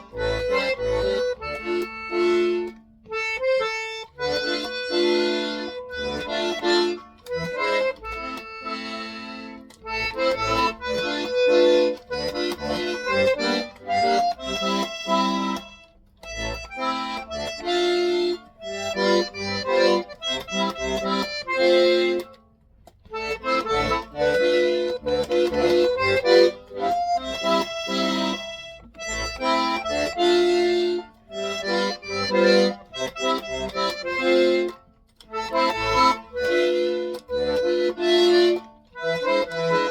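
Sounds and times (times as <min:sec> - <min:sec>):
accordion playing chords: 0:00.0 - 0:39.9.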